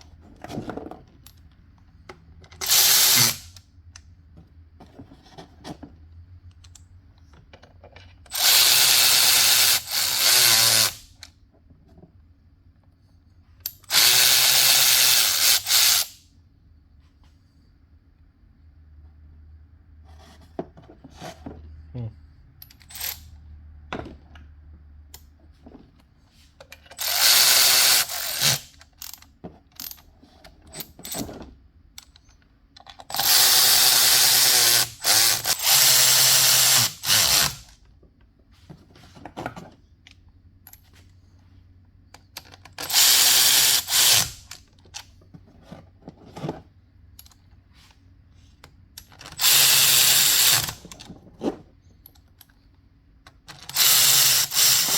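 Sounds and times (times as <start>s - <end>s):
power drill running: 2.6s - 3.5s, 8.3s - 11.1s, 13.9s - 16.2s, 27.0s - 28.7s, 33.1s - 37.7s, 42.8s - 44.5s, 49.4s - 50.8s, 53.7s - 54.9s.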